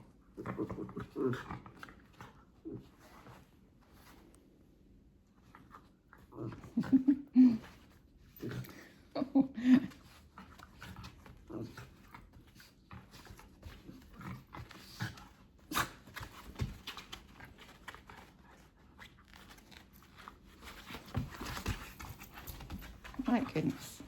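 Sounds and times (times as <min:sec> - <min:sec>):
animals scuffling: 0:16.1 - 0:24.0.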